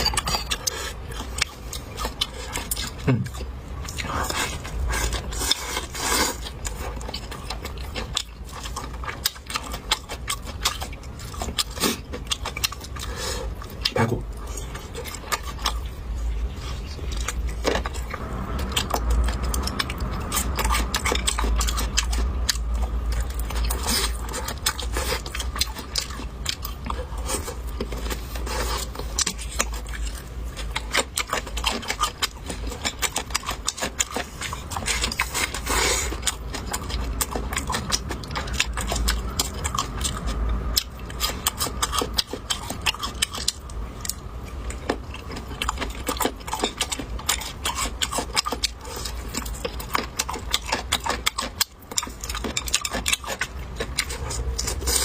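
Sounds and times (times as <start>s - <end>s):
person chewing crunchy food: 0.0s - 55.0s
low hum: 12.4s - 47.3s.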